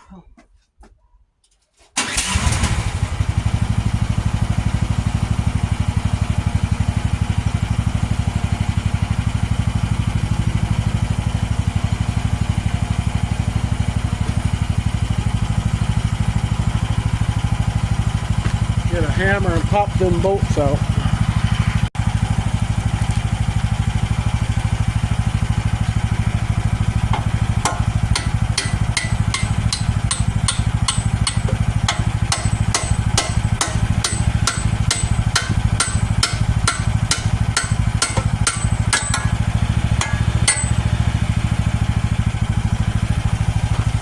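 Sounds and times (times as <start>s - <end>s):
excavator engine idling: 3.2s - 44.0s
hammer striking metal: 27.1s - 41.0s.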